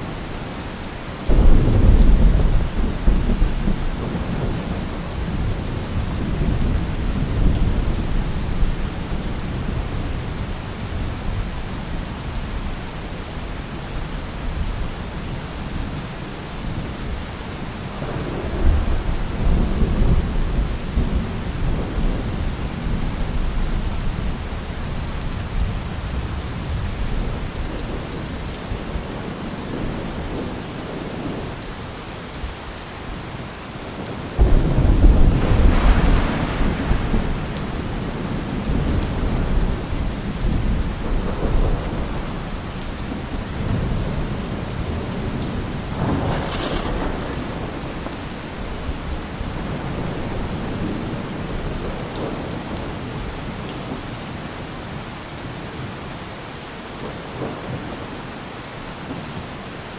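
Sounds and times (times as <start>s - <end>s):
heavy rain: 0.0s - 59.9s
thunder rumbling: 1.2s - 10.3s, 34.0s - 53.4s.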